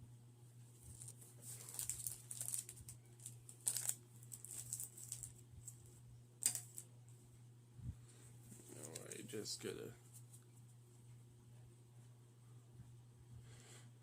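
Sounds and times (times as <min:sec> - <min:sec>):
foil wrapper tearing and crinkling: 0:00.9 - 0:05.4.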